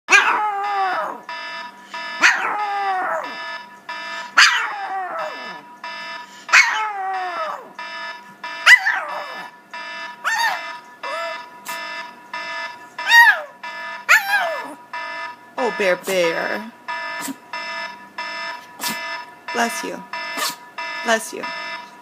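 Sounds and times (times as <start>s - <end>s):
dog howling: 0.1s - 1.3s, 2.2s - 3.4s, 4.4s - 5.6s, 6.5s - 7.8s, 8.7s - 9.5s, 10.2s - 11.4s, 13.0s - 14.8s
electronic alarm tone: 0.3s - 22.0s.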